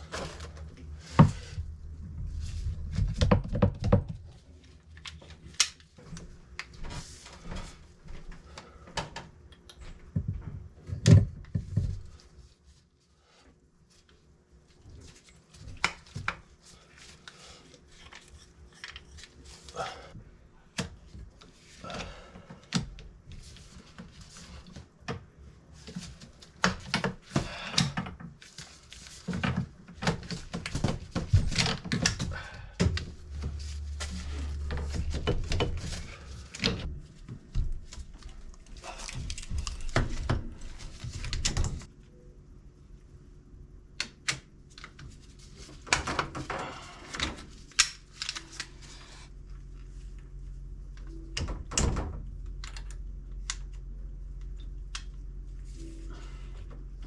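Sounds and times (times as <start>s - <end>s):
low hum: 46.5s - 57.0s.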